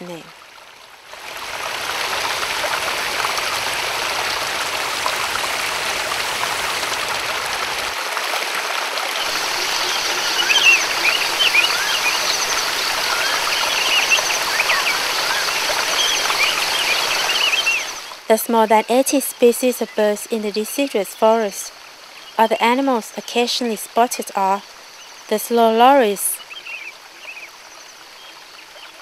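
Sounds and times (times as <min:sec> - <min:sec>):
waterfall rushing and splashing: 0:00.6 - 0:18.3
birds chirping: 0:09.2 - 0:18.2.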